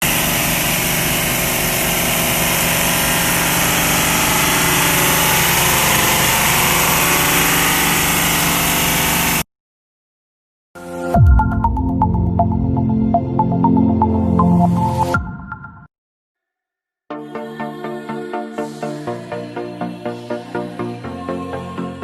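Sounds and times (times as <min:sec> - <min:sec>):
lathe machine drone: 0:00.0 - 0:09.4.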